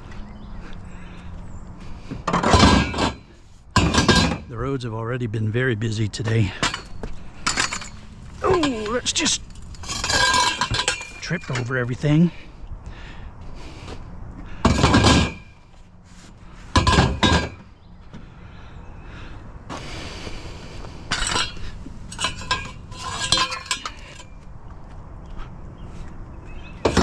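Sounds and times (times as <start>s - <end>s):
metal tubes clanking: 2.2s - 4.7s, 6.2s - 12.4s, 14.6s - 15.6s, 16.7s - 17.7s, 21.1s - 24.4s.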